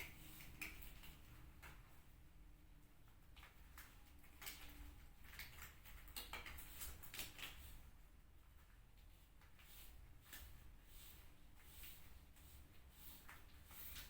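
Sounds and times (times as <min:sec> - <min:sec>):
small items clicking and rustling: 0:03.3 - 0:07.8.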